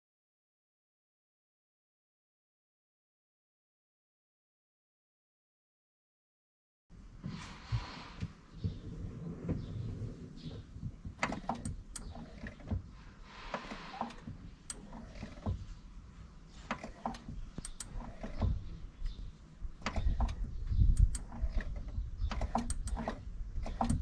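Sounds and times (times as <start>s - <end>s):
clicks and knocks in car cabin: 7.2s - 15.8s, 16.6s - 19.2s, 19.8s - 24.0s.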